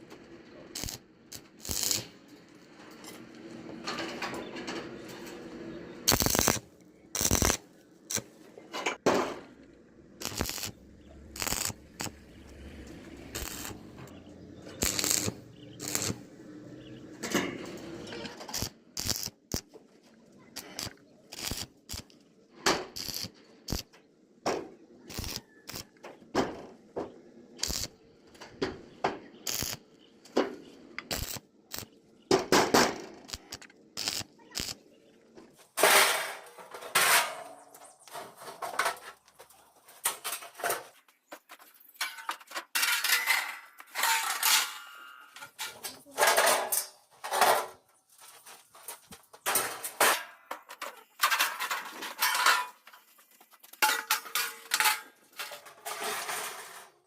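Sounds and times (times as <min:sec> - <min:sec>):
metal pieces clanking: 0:42.0 - 0:47.8, 0:49.4 - 0:52.9, 0:53.8 - 0:57.0.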